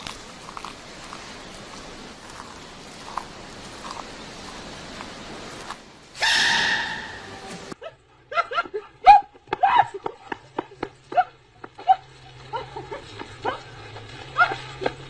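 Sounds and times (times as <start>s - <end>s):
drawn-out animal cry: 0.0s - 7.8s
yelping animal calls: 0.0s - 7.8s.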